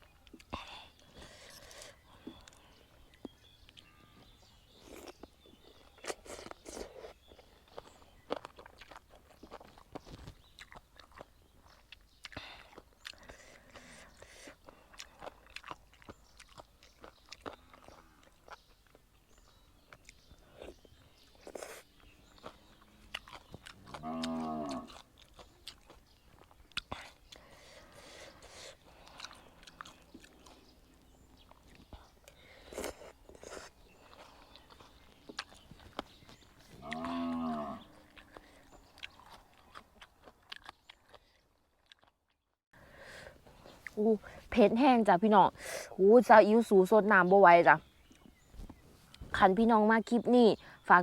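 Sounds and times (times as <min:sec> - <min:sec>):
chewing and crunching: 0:00.0 - 0:45.0, 0:47.9 - 0:50.9
cow mooing: 0:24.0 - 0:24.9, 0:36.8 - 0:37.9.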